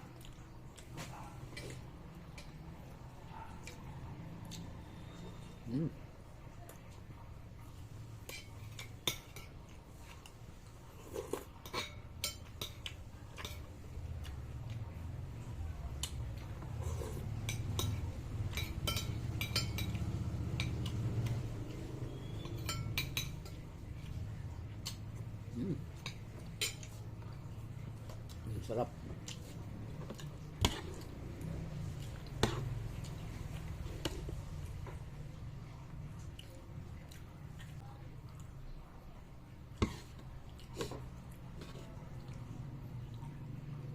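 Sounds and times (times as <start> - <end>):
utensils clinking against bowl: 11.1 - 13.7, 16.8 - 23.7
spoon clinking against bowl: 17.4 - 20.0, 22.2 - 23.6.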